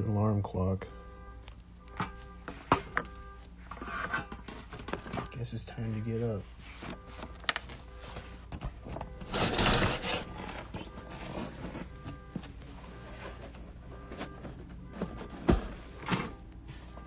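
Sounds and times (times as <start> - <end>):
distant car alarm: 0.0 - 17.0
loud rustle: 9.3 - 12.0.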